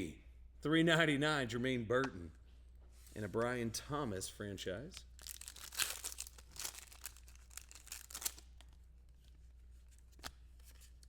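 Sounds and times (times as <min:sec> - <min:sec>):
wrapper crinkling: 0:05.0 - 0:08.7
card pack wrapper tearing: 0:05.2 - 0:08.5.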